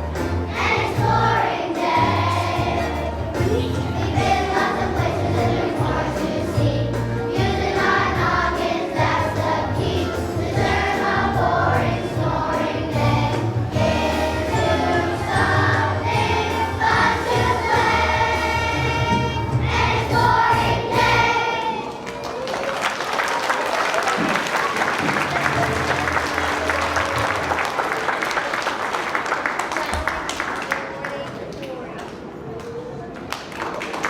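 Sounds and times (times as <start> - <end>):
instrumental accompaniment: 0.0 - 21.5
children's choir singing: 0.0 - 22.1.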